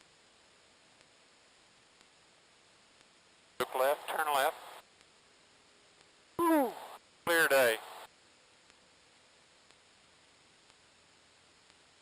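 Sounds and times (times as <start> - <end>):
faint hiss: 0.0 - 5.7, 6.3 - 8.2
faint ticks: 0.9 - 1.2, 2.0 - 2.2, 2.9 - 3.2, 9.6 - 9.8, 10.6 - 10.9, 11.6 - 11.9.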